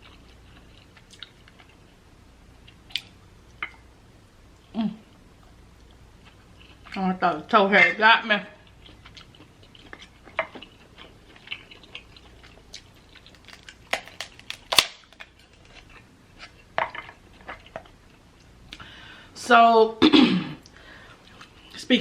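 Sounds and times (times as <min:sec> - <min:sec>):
chewing: 0:00.0 - 0:02.0, 0:05.4 - 0:07.0, 0:08.6 - 0:14.6, 0:15.2 - 0:18.8
crab shell clicking: 0:13.3 - 0:15.3.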